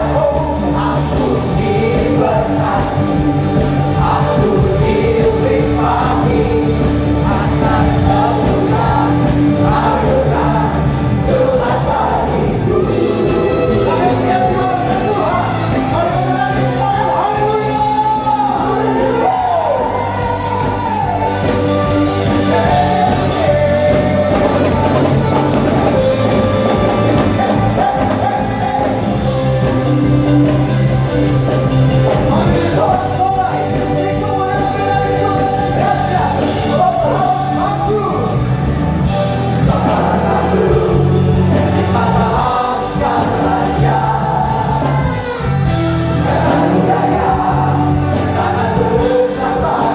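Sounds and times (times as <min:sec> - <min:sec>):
people singing: 0:00.0 - 0:49.9
worship band playing: 0:00.0 - 0:49.9.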